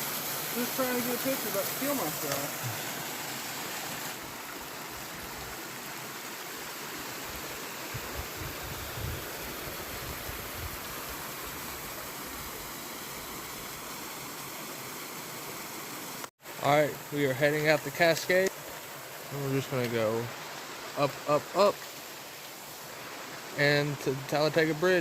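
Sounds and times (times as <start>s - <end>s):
water rushing over rock: 0.0s - 12.6s.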